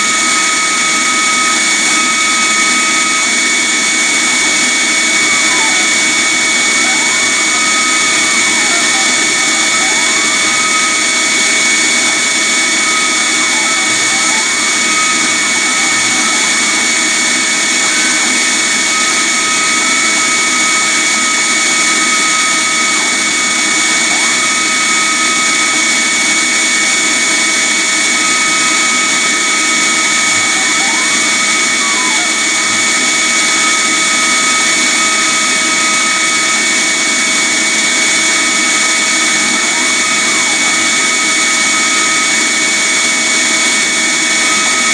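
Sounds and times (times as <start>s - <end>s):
motors whining in pitch: 0.0s - 44.9s
vacuum running with whine: 0.0s - 44.9s.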